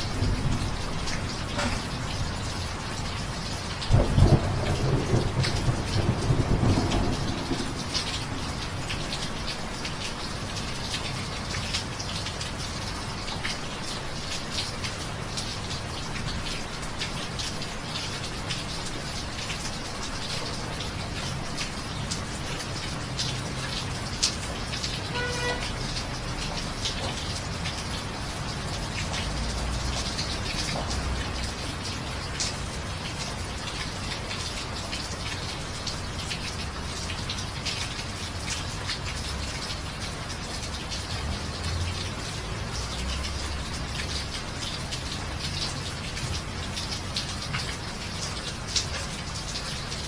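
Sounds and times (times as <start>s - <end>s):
rain on hard surfaces: 0.0s - 50.0s.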